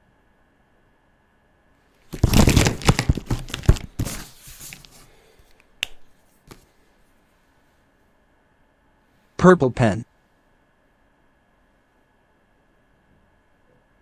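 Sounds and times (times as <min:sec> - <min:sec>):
crinkling rustle: 0:02.1 - 0:05.6.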